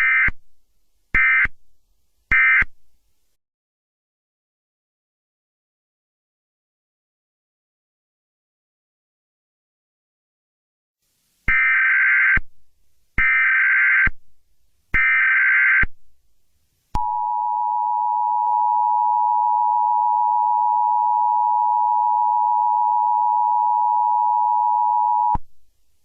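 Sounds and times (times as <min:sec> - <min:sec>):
data tone bursts: 0:17.0 - 0:25.4.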